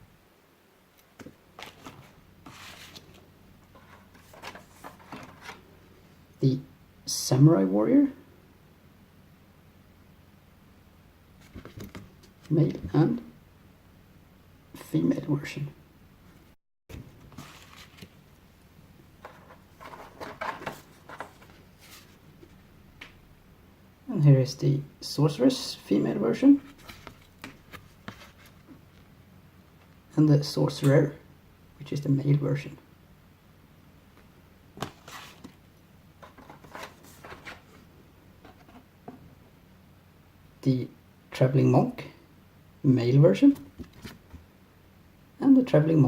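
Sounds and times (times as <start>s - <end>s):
cards rustling: 1.2s - 5.7s, 17.3s - 18.2s, 19.2s - 22.2s, 34.8s - 35.6s, 36.2s - 37.9s.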